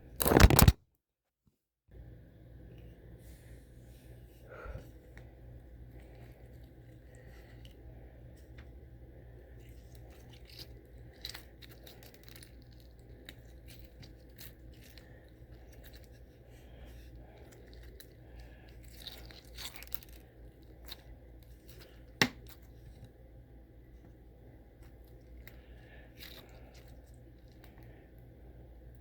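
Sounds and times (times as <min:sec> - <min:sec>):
soft crackles and clicks: 0:00.2 - 0:00.8.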